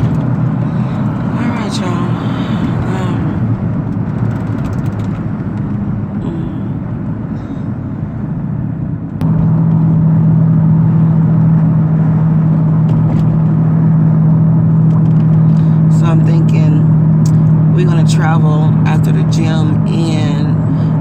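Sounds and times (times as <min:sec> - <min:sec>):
road and engine rumble: 0:00.0 - 0:21.0
steady low hum: 0:05.2 - 0:21.0.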